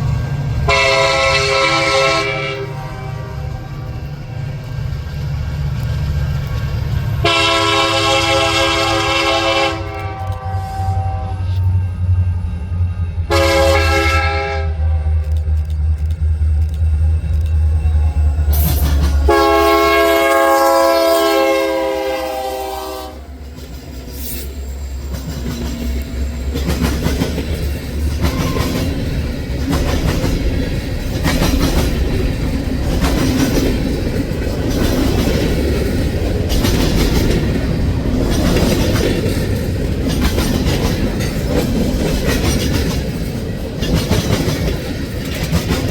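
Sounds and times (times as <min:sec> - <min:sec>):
diesel locomotive engine humming: 0:00.0 - 0:45.9
railcars rumbling past: 0:00.0 - 0:45.9
train horn blasts: 0:00.6 - 0:04.1, 0:07.2 - 0:11.7, 0:13.3 - 0:15.3, 0:18.5 - 0:23.3
wheels clicking over rail joints: 0:25.0 - 0:45.9.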